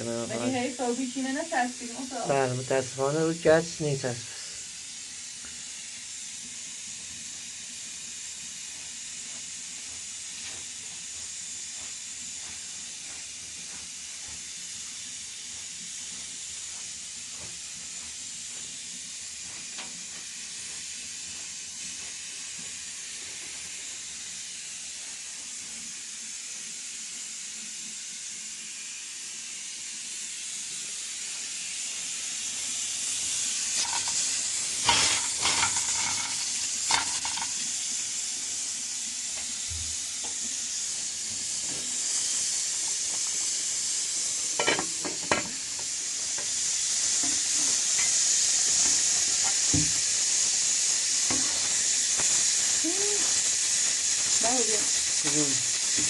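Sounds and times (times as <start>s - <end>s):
food sizzling in a pot: 0.0s - 56.0s.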